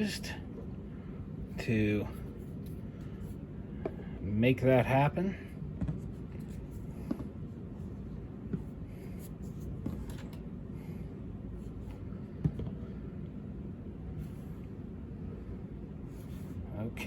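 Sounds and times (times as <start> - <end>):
steady low hum: 0.0 - 17.0
faint rubbing and taps: 5.8 - 7.4.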